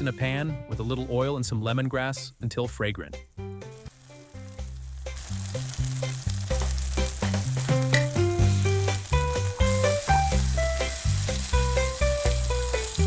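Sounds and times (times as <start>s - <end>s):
spice paste sizzling in hot oil: 3.3s - 13.0s.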